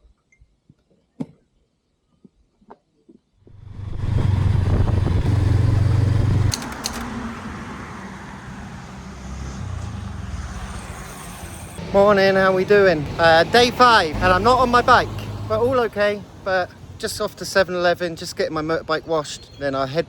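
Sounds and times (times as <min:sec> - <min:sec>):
road vehicle rumble: 0:03.5 - 0:17.9
steady traffic noise: 0:03.5 - 0:20.0.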